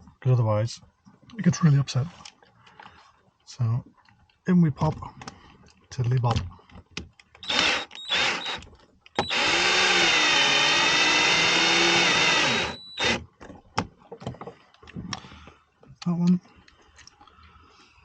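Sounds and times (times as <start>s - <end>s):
cordless drill driving a screw: 7.4s - 13.2s.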